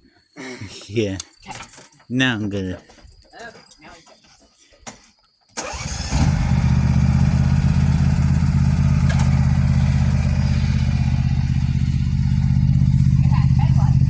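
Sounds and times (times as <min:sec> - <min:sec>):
lawn tractor engine starting: 0:05.6 - 0:14.0.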